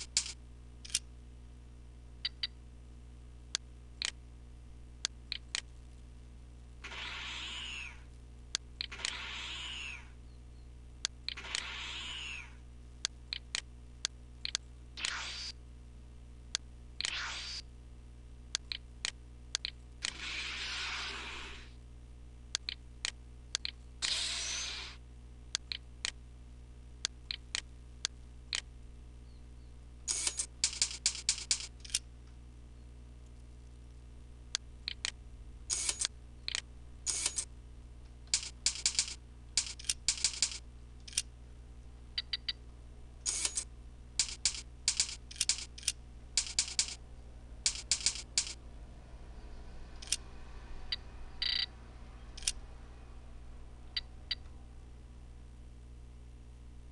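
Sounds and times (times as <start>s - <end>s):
electrical hum: 0.0s - 56.9s
computer keyboard typing: 38.4s - 41.2s, 44.2s - 47.0s, 47.6s - 48.6s.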